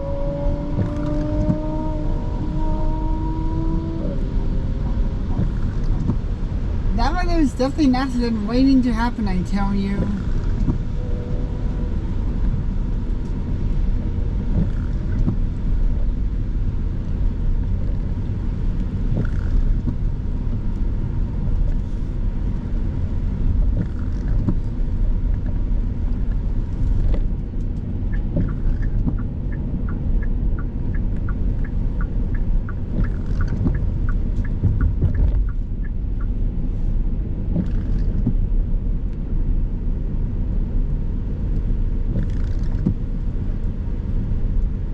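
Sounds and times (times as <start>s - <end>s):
car engine and tyre rumble: 0.0s - 44.9s
turn signal ticking: 0.3s - 11.1s, 12.3s - 16.3s, 16.9s - 21.8s, 23.4s - 36.6s, 37.4s - 38.5s.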